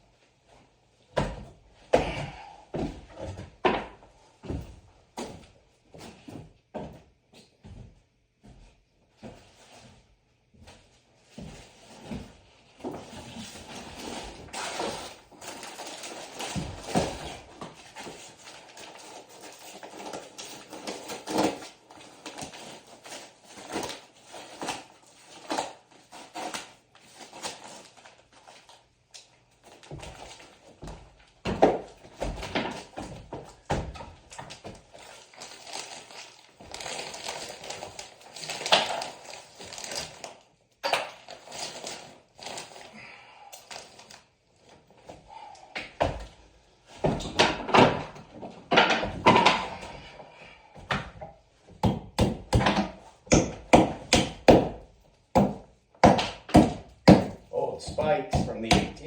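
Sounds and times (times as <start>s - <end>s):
rustling: 32.8s - 40.5s.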